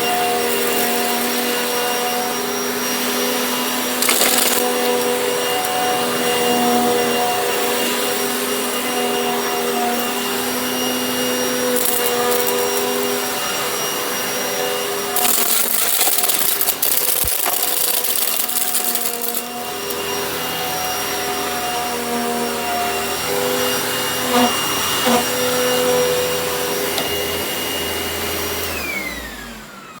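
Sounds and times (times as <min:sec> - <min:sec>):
electric motor whining: 0:00.0 - 0:30.0.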